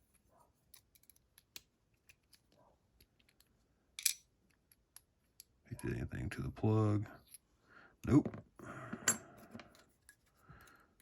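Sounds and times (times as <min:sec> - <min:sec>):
metallic clicks of lock and tools: 0:00.7 - 0:05.6.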